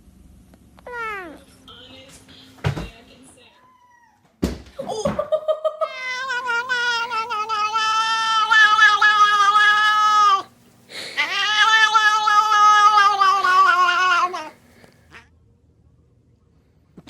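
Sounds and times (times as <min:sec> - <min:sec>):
cat yowling: 0:00.9 - 0:01.4, 0:03.6 - 0:04.2, 0:05.8 - 0:10.5, 0:11.1 - 0:15.3.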